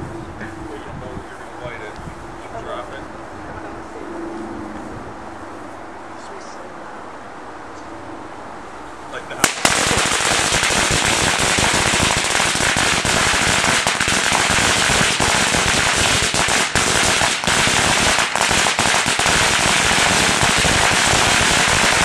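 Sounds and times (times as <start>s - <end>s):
firecrackers crackling: 9.4s - 22.0s.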